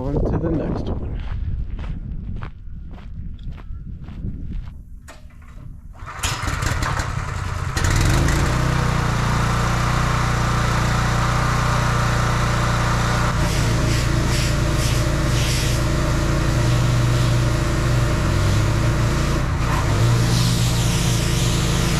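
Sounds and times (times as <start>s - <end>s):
pressure washer engine running: 6.0s - 21.9s
pressure washer water hiss: 13.4s - 19.4s, 20.0s - 21.9s.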